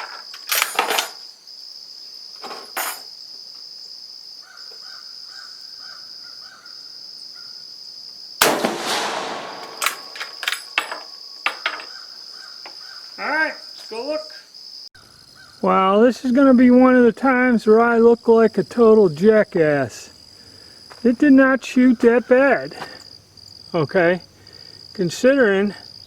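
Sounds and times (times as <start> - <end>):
high drone of insects: 0.0 - 26.0
rifle bolt metallic clicks: 8.4 - 10.7
rifle shot: 8.4 - 10.8.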